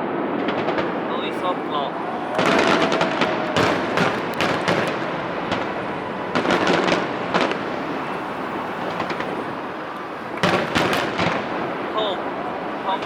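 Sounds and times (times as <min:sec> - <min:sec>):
fireworks bangs and crackles: 0:00.0 - 0:13.0
steady rumbling haze: 0:00.0 - 0:13.0.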